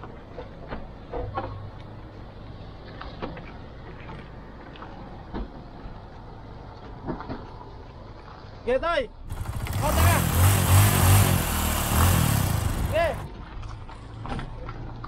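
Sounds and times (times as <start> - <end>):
boat engine humming: 9.3 - 13.4.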